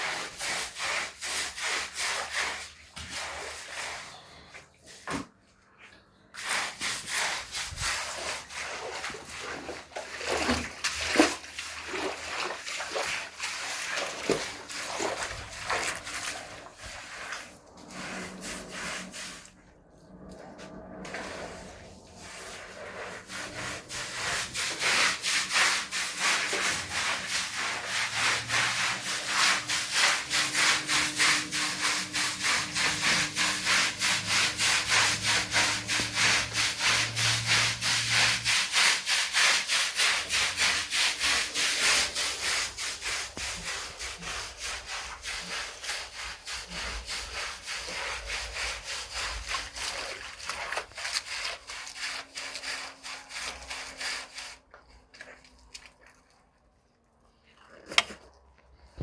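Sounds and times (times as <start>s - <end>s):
rubbing against hard surface: 12.9s - 54.7s.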